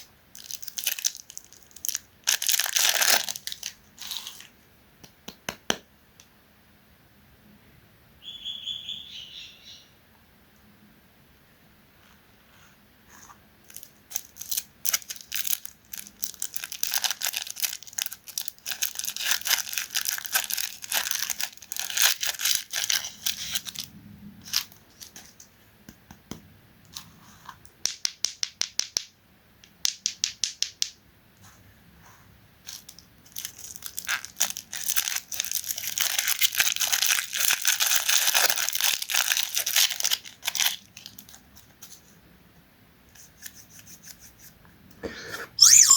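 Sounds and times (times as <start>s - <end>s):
chocolate bar wrapper crinkling: 0.4s - 4.6s, 13.6s - 25.3s, 32.7s - 42.0s.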